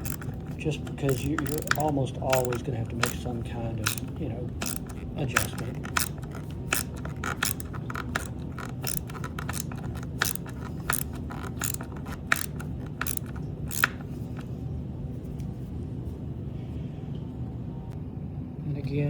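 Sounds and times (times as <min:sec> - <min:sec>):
socket ratchet clicking: 0:00.0 - 0:14.5.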